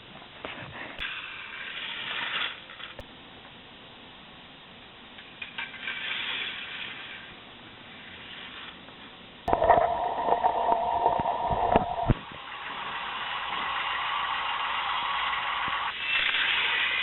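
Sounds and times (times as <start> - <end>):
toy roller coaster clicking and rattling: 1.0 - 3.0, 5.2 - 7.3, 9.5 - 17.0.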